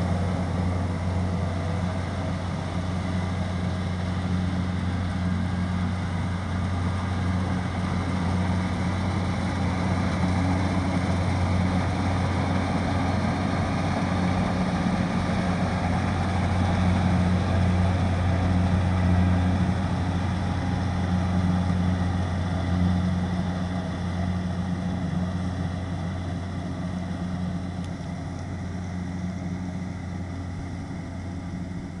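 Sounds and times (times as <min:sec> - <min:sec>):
harvester diesel engine hum: 0:00.0 - 0:32.0.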